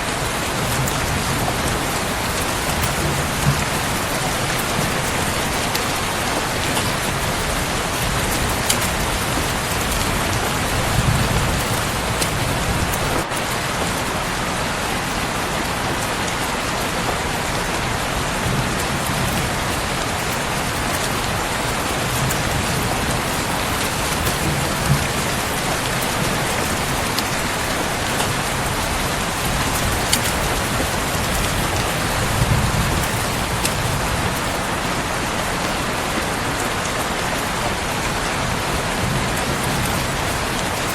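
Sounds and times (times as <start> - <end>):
dense rain falling: 0.0 - 40.9.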